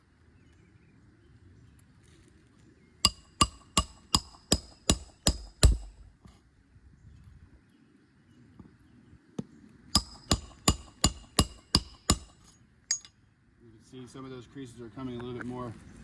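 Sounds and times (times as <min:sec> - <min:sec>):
hammer striking metal: 0:03.0 - 0:05.9, 0:10.0 - 0:13.1.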